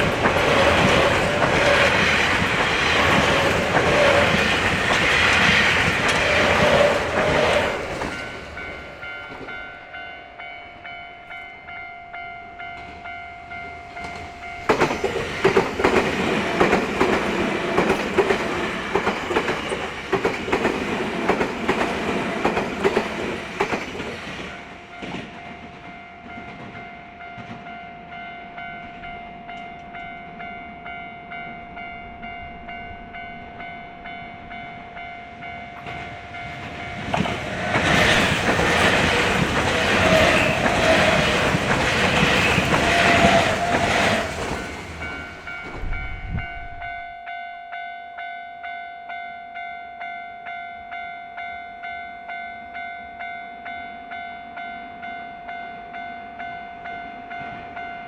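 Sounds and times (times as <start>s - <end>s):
train wheels clattering: 0.0s - 9.6s, 14.0s - 26.8s, 35.8s - 45.9s
level-crossing alarm bell ringing: 24.6s - 58.0s.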